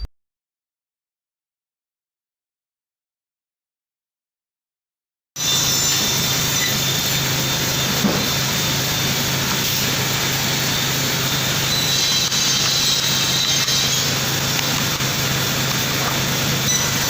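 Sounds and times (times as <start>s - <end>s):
woodworking machinery running: 5.4s - 17.0s.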